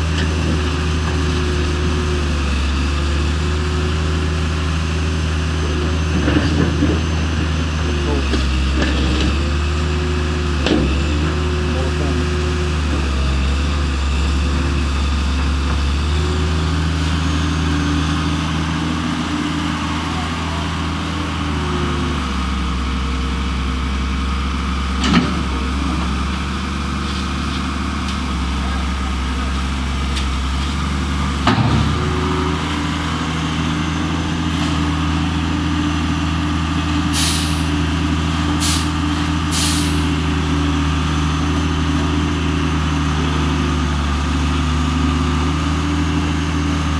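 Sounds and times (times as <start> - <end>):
vehicle engine idling: 12.8 - 40.5.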